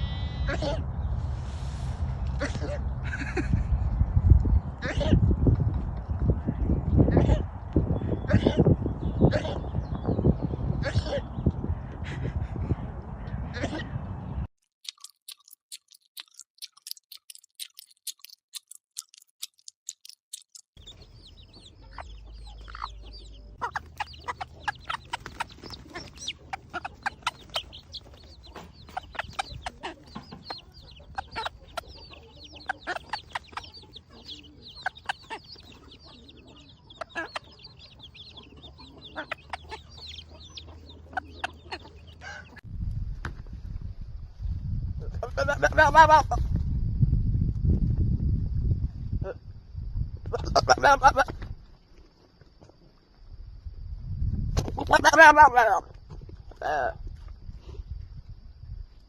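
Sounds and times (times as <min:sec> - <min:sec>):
chickens clucking: 0:20.8 - 0:42.6.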